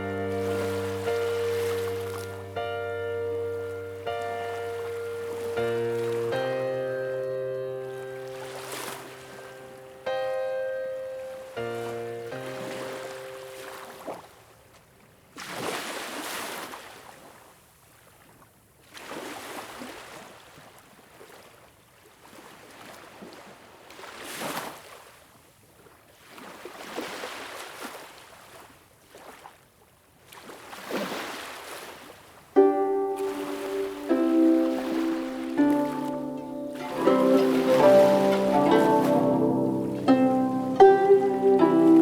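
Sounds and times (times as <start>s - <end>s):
sustained music notes: 0.0s - 14.0s, 32.6s - 42.0s
sea waves breaking: 0.0s - 14.5s, 15.4s - 17.4s, 30.3s - 42.0s.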